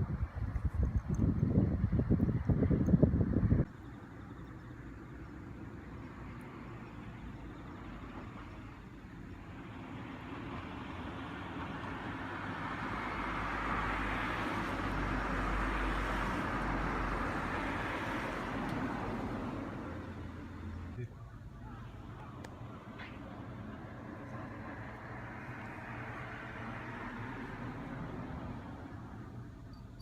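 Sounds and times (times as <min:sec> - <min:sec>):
vehicle passing by: 0:09.5 - 0:29.4.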